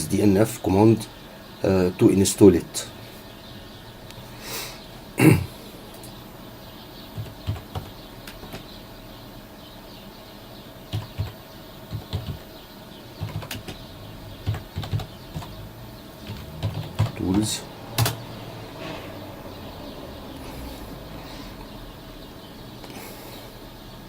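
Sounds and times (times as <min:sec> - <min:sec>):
computer keyboard typing: 0:07.2 - 0:08.6, 0:10.9 - 0:12.4, 0:13.2 - 0:13.8, 0:14.4 - 0:15.6, 0:16.2 - 0:18.2
soft breath: 0:20.4 - 0:21.8.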